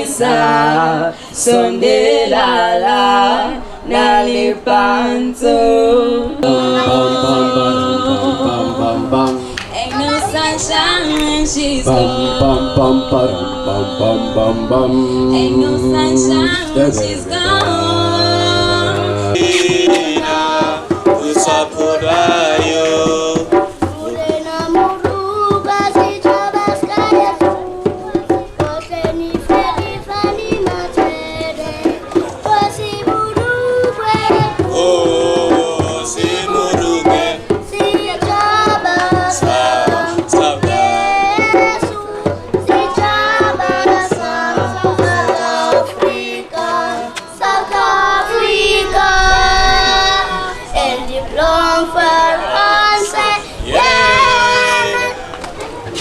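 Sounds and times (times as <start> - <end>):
people singing: 0.0 - 56.0
hand drum percussion: 6.4 - 48.9.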